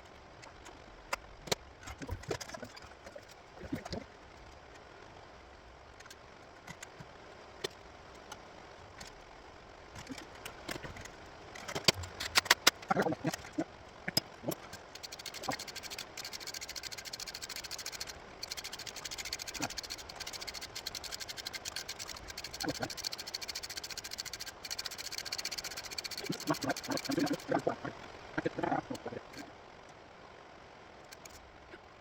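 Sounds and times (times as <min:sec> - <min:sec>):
ratchet wrench clicking: 0:14.1 - 0:27.5.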